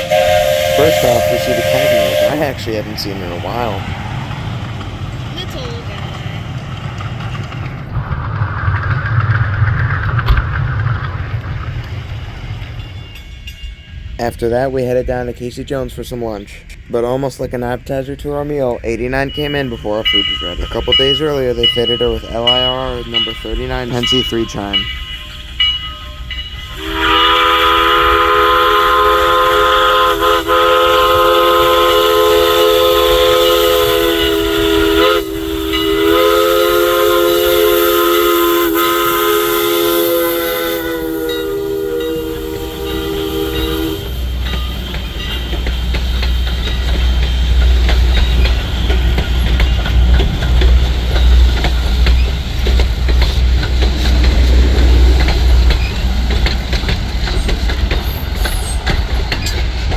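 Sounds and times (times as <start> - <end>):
steam locomotive chime whistle: 0.0 - 3.8, 19.0 - 52.8
train rumbling and clanking on rails: 0.0 - 59.9.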